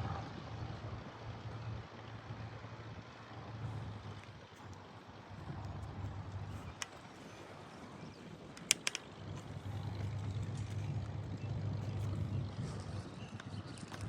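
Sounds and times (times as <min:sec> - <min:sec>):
distant aircraft engine rumble: 0:00.0 - 0:14.0
sharp clicks: 0:05.6 - 0:07.2, 0:08.5 - 0:09.5.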